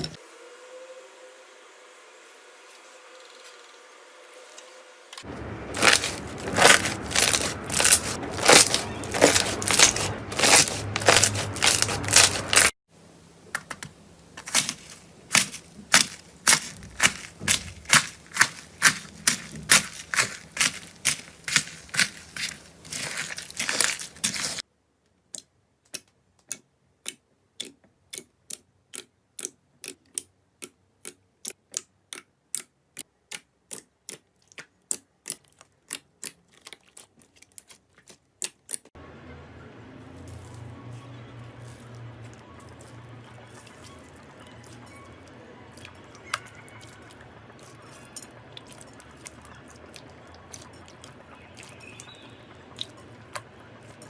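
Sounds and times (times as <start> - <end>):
slime crackling and popping: 5.4 - 12.7, 14.4 - 24.6.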